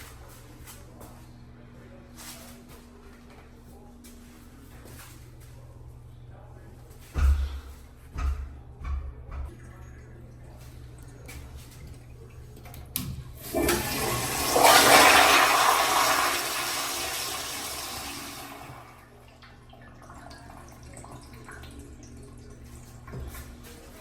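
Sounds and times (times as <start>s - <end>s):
toilet flushing water rush: 13.3s - 23.1s.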